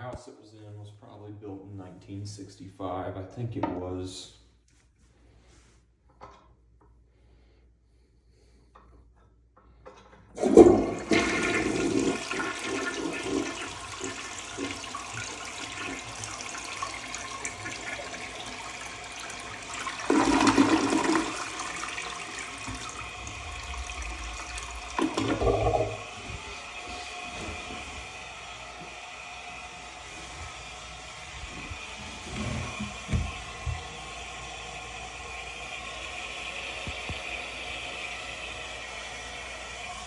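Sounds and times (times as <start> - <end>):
toilet flushing water rush: 10.4 - 40.0.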